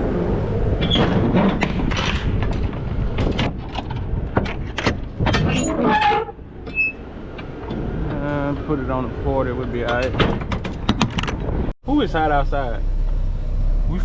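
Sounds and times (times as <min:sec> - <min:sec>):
truck engine rumbling: 0:00.0 - 0:14.0
sharp clicks and rattles: 0:00.8 - 0:05.6, 0:09.8 - 0:11.7.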